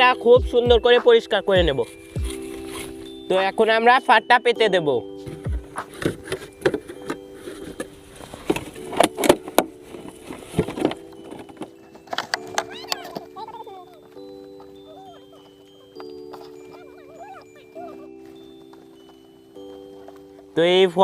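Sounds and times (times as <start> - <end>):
background music with wavering melody: 0.0 - 21.0.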